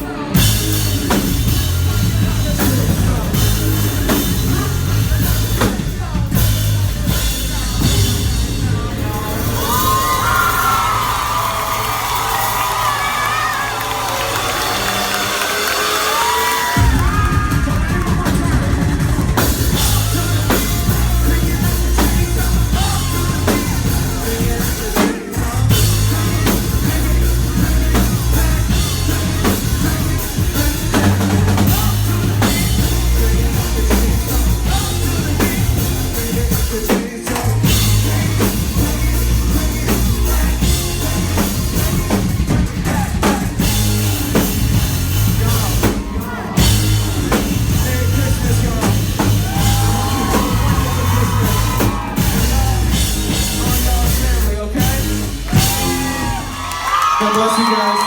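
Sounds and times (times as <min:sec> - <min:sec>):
live rock band playing: 0:00.0 - 0:58.0
person singing: 0:15.2 - 0:58.0.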